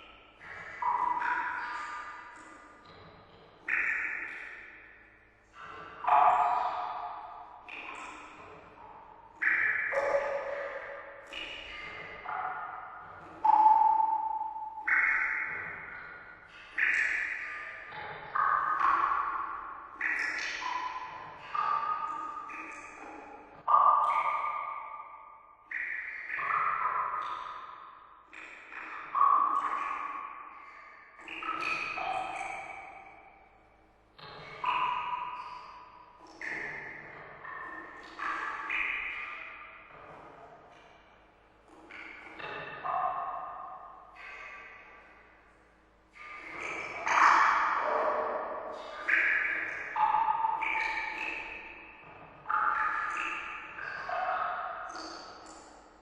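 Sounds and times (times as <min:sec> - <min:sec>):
water drops plinking into water: 0:00.0 - 0:04.9, 0:05.5 - 0:33.6, 0:34.2 - 0:41.0, 0:41.7 - 0:45.2, 0:46.1 - 0:55.8.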